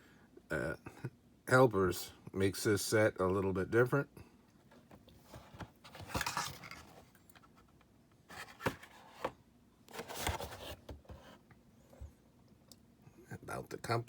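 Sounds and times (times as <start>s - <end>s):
packaging scraping and rustling: 5.2s - 7.7s, 8.3s - 11.4s.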